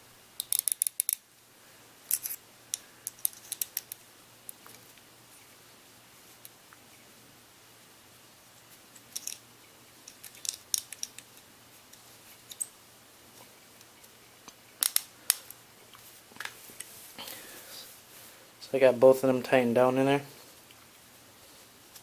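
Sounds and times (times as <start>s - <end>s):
allen wrench clicking on metal: 0.4s - 1.2s, 2.1s - 2.4s.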